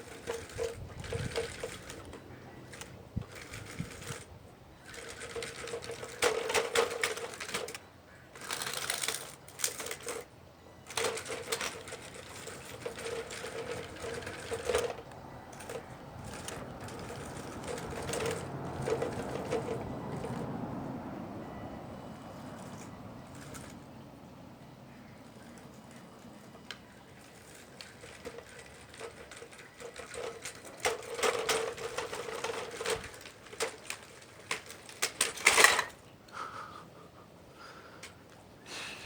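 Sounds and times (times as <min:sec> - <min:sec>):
clicks and clanks: 0:00.0 - 0:07.8, 0:08.4 - 0:20.5, 0:25.5 - 0:36.1
electric pump and motors whirring: 0:00.0 - 0:20.6.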